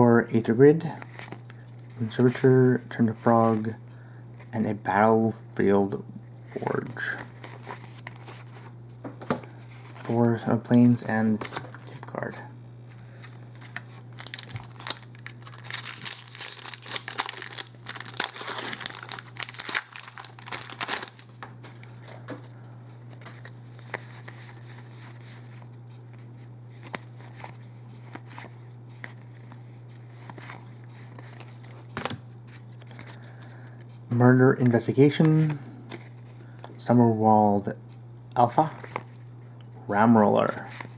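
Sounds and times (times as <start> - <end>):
steady low hum: 0.0 - 40.9
foil wrapper tearing and crinkling: 13.1 - 21.9.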